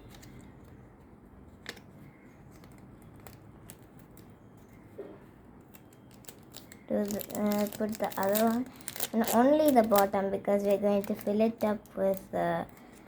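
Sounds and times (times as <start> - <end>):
paper and tape rustling: 5.6 - 13.0.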